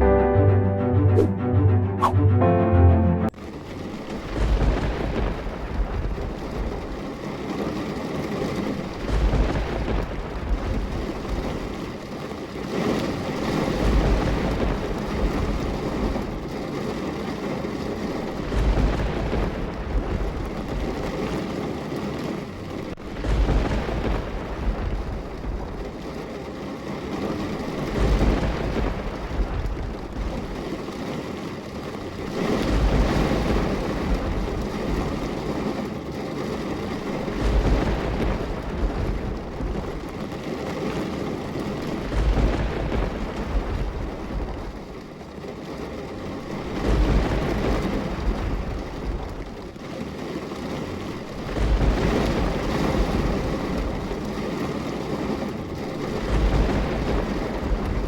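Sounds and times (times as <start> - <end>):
steady rain: 0.0 - 1.0, 2.8 - 58.0
deep rumbles: 3.5 - 7.3, 41.6 - 44.9.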